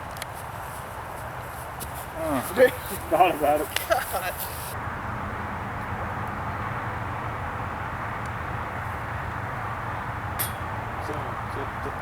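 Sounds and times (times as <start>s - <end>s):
outdoor background rumble: 0.0s - 12.0s.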